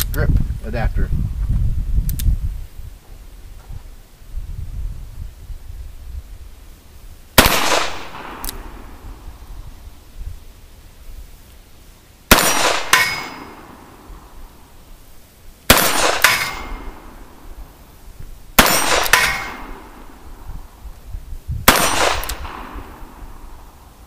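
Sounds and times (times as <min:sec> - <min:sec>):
revolver shots: 0:07.4 - 0:09.1, 0:15.7 - 0:17.3, 0:18.6 - 0:20.2
bullet clanging on steel plate: 0:12.9 - 0:13.5, 0:16.2 - 0:16.9.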